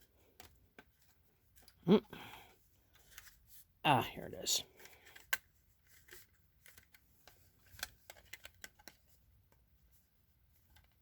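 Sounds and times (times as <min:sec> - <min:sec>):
plastic housing clicks and scrapes: 0:04.8 - 0:09.1.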